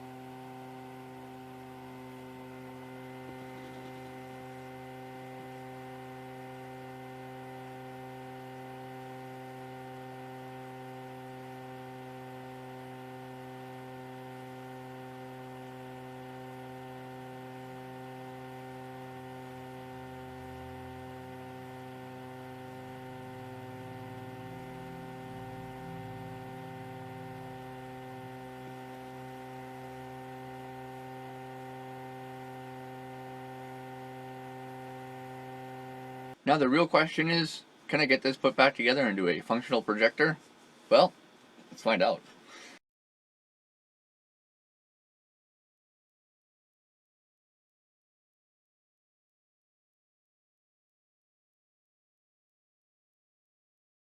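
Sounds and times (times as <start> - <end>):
electrical hum: 0.0 - 42.8.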